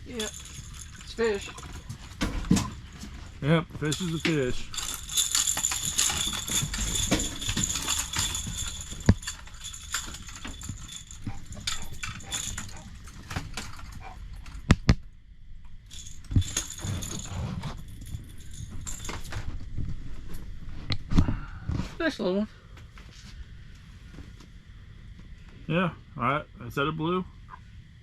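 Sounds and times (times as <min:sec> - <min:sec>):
clicking and rattling handling noises: 0:00.0 - 0:21.1
faint high steady whine: 0:00.0 - 0:28.0.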